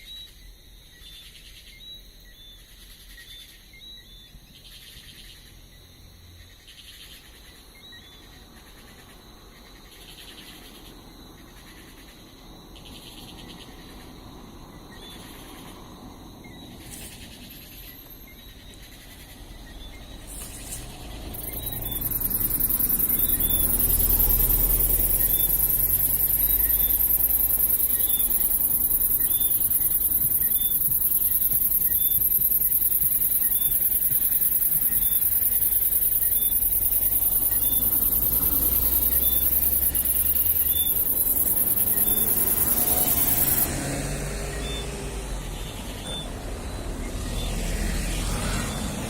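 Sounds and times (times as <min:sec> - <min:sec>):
frogs whistled chirps: 0:00.0 - 0:43.7, 0:44.4 - 0:49.0
high-pitched insect shrill: 0:20.2 - 0:43.7.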